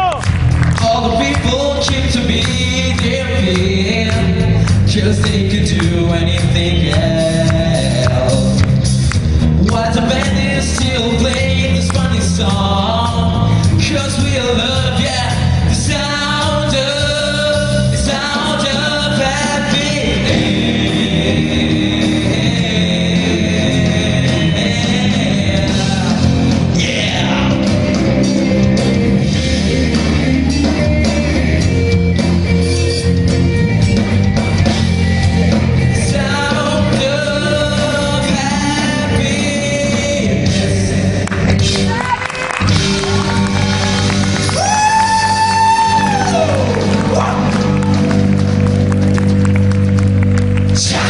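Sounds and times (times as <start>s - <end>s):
man singing lead vocal: 0.0s - 33.1s, 35.4s - 48.0s, 50.8s - 51.0s
live rock band playing: 0.0s - 51.0s.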